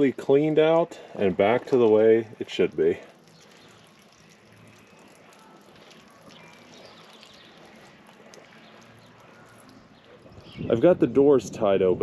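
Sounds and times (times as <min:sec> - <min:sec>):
faint outdoor background noise: 0:00.0 - 0:12.0
faint bird chirps: 0:03.2 - 0:10.8.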